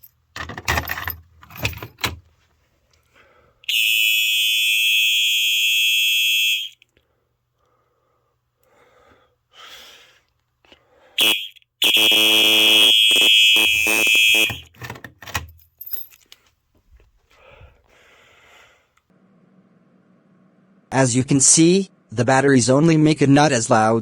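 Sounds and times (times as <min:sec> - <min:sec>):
fire alarm horn blast: 0:03.7 - 0:06.8, 0:11.2 - 0:14.7
clicks and knocks: 0:14.6 - 0:16.2.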